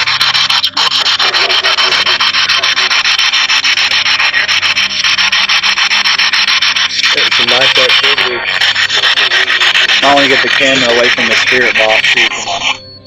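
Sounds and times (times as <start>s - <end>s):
pulsing radio static: 6.9s - 12.8s.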